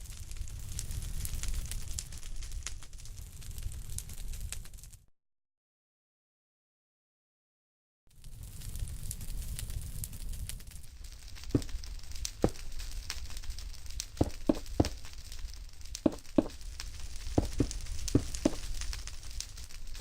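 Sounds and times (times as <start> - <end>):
sharp clicks and crackles: 11.3 - 20.0.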